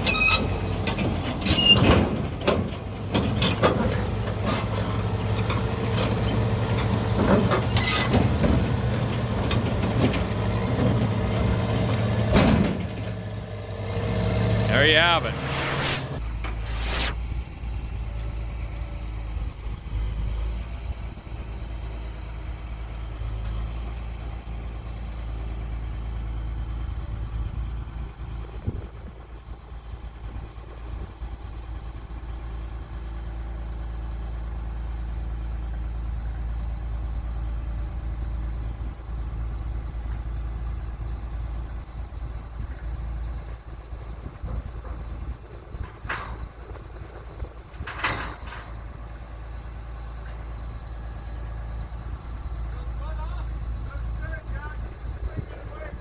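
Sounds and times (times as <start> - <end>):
diesel engine rumbling: 0.0 - 17.2.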